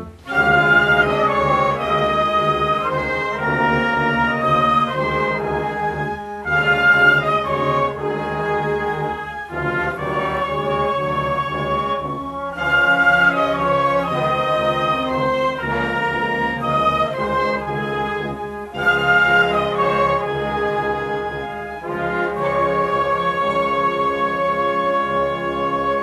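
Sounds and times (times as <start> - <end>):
brass-led orchestral music: 0.0 - 26.0.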